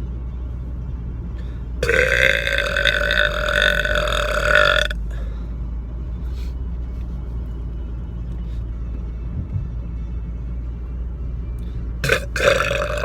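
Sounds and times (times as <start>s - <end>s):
car cabin rumble: 0.0s - 13.0s
man burping: 1.8s - 5.0s, 12.0s - 13.0s.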